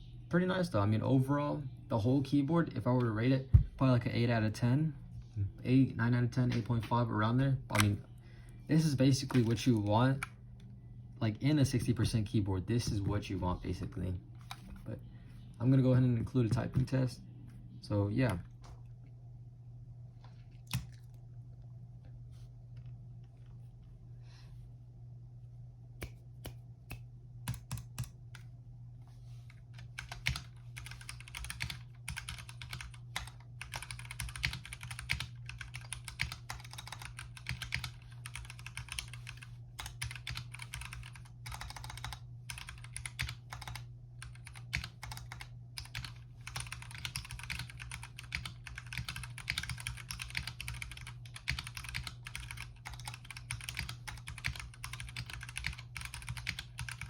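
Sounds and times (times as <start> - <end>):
steady low hum: 0.0 - 57.0
mechanical keyboard typing: 29.8 - 57.0.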